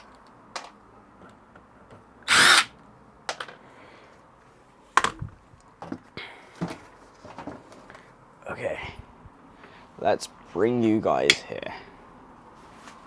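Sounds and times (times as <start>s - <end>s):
power drill whirring: 2.3s - 2.7s.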